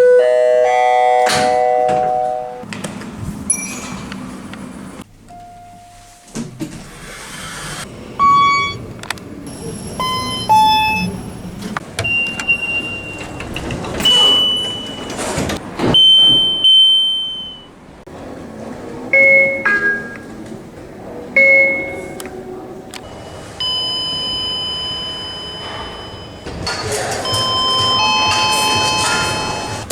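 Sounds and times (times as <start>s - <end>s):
elevator chimes: 0.0s - 2.6s, 8.1s - 17.7s, 19.1s - 20.4s, 21.4s - 22.4s, 23.1s - 29.9s
lift door machinery noise: 6.4s - 29.9s
high electronic beeps: 8.2s - 8.9s, 9.5s - 11.3s.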